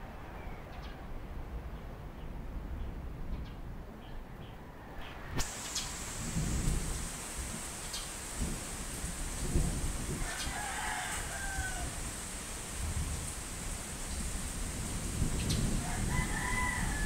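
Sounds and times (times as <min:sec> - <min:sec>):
steady rain: 0:00.0 - 0:17.0
rolling thunder: 0:05.4 - 0:12.0, 0:12.7 - 0:17.0
rooster crowing: 0:10.2 - 0:12.2, 0:15.8 - 0:17.0.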